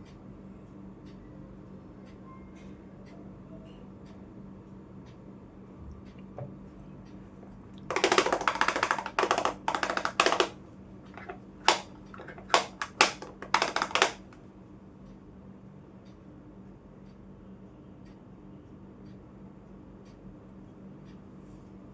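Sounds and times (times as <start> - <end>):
fingernails tapping on toy pieces: 7.9 - 14.4.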